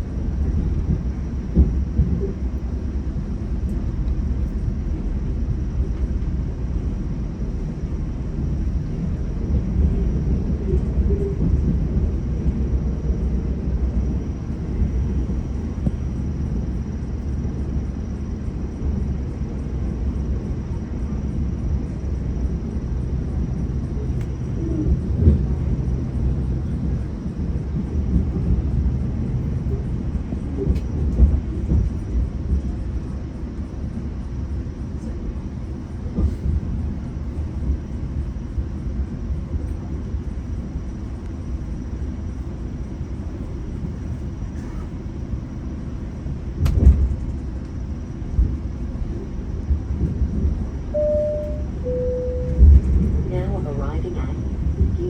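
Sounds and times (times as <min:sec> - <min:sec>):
train rumbling along track: 0:00.0 - 0:55.0.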